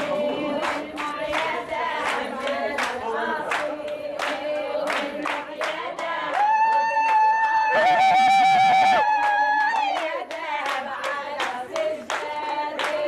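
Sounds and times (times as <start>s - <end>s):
group singing: 0.0s - 6.7s, 9.7s - 13.0s
rhythmic hand-clapping: 0.0s - 13.0s.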